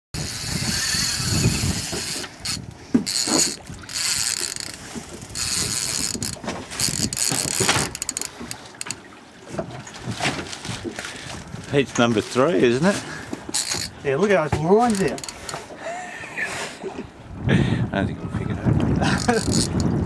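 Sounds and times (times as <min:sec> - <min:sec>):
fishing reel clicker buzzing: 0:00.2 - 0:09.0, 0:13.6 - 0:14.0, 0:14.9 - 0:15.6, 0:19.2 - 0:19.9.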